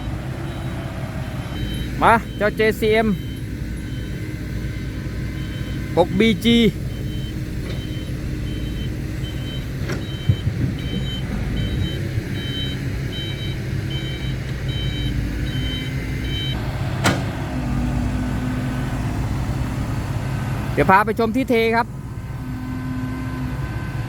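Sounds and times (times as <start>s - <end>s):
reversing alarm beeps: 0.0s - 16.6s
diesel engine running: 0.0s - 24.0s.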